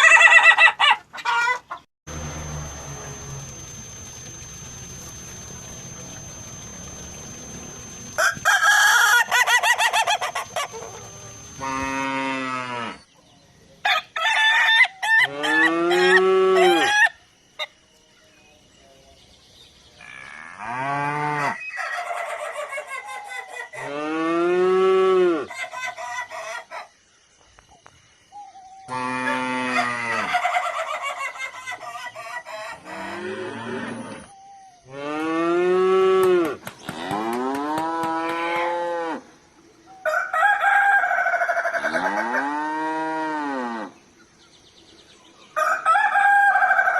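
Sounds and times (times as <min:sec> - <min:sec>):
roosters crowing: 0:00.0 - 0:03.7, 0:07.5 - 0:13.1, 0:13.8 - 0:17.2, 0:20.1 - 0:26.9, 0:28.9 - 0:44.0, 0:45.4 - 0:46.9.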